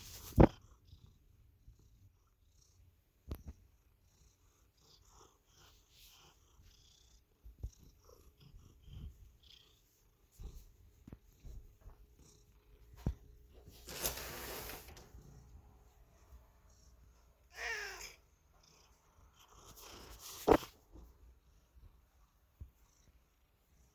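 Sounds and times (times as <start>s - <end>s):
rustling noise: 0.0s - 0.5s, 12.8s - 16.2s, 19.6s - 21.3s
cat purring: 0.0s - 23.9s.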